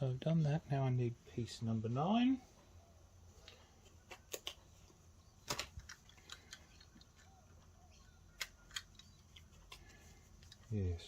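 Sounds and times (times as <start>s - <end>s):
cardboard pieces clicking and tapping: 8.3s - 10.6s.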